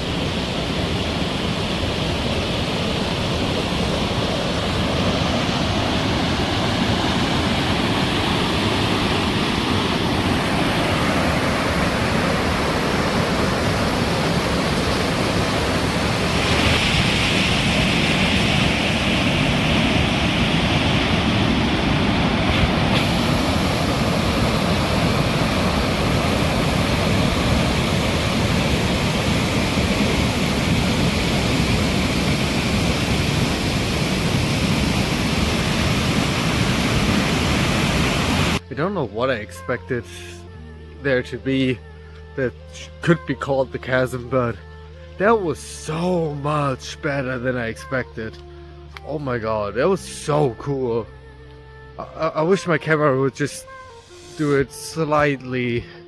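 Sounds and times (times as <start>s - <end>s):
whitewater rushing through gorge: 0.0s - 38.6s.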